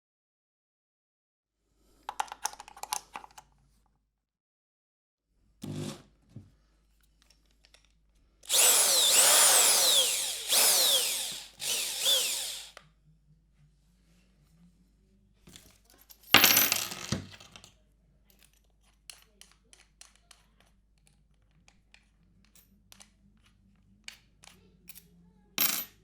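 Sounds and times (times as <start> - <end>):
electric screwdriver motor whine: 8.5 - 12.7.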